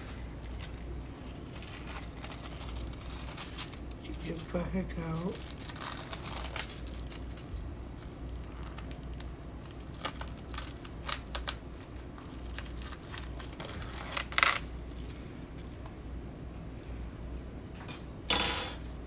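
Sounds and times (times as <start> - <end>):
plastic packaging crinkling: 0.4 - 15.2.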